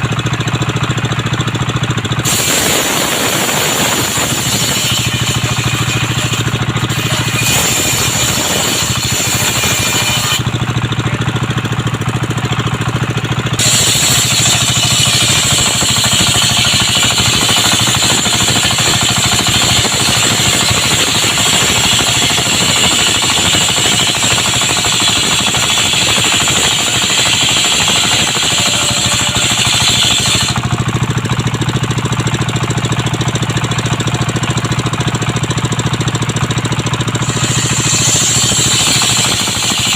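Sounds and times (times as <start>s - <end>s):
sawmill engine running: 0.0s - 39.9s
saw blade cutting wood hiss: 2.2s - 10.6s, 13.6s - 30.8s, 37.1s - 39.9s.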